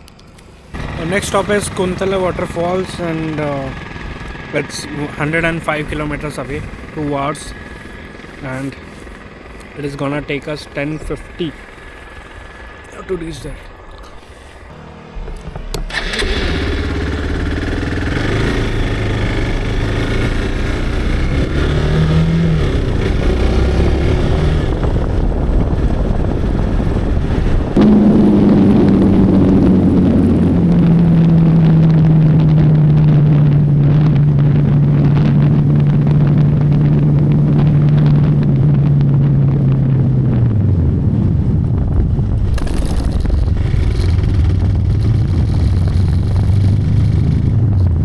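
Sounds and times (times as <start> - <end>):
motorcycle engine accelerating: 0.0 - 48.0.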